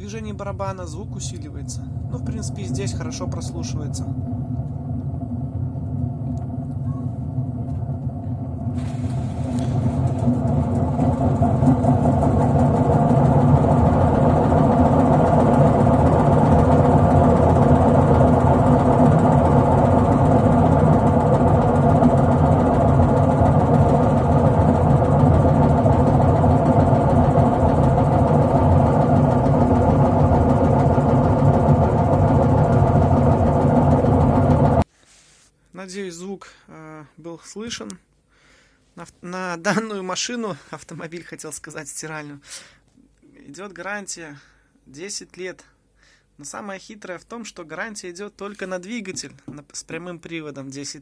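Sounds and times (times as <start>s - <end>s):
washing machine drum spinning: 0.1s - 34.8s.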